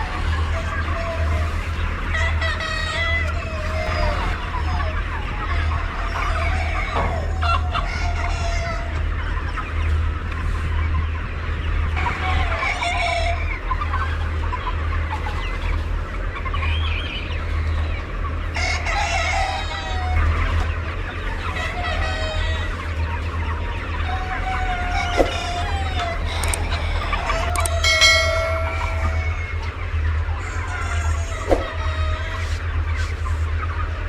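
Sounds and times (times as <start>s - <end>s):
chickens clucking: 0.0s - 34.0s
rooster crowing: 18.6s - 20.3s, 24.1s - 29.8s.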